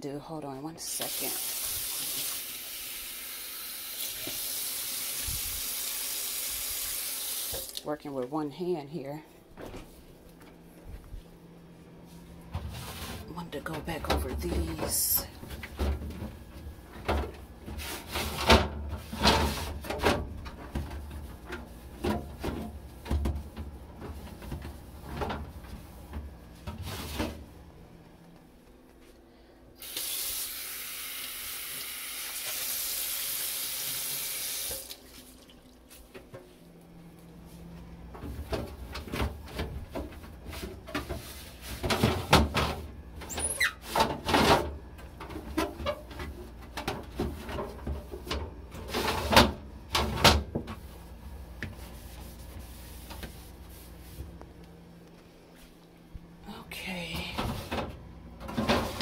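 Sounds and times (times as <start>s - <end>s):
faucet water running into sink: 0.9s - 7.8s, 29.8s - 35.7s
items knocking and clattering: 13.9s - 27.4s, 38.1s - 43.3s, 43.9s - 50.8s, 57.3s - 59.0s.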